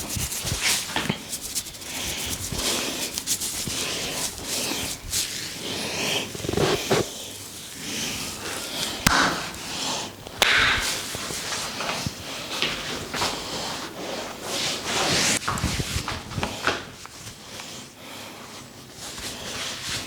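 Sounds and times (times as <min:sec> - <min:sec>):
hands rustling through hair: 0:00.0 - 0:10.0.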